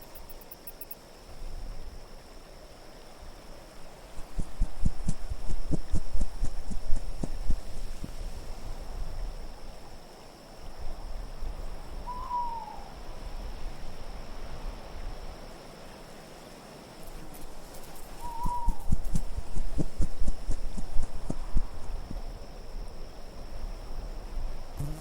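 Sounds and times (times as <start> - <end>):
faint steady high whine: 0.0 - 25.0
wind gusts: 0.0 - 25.0.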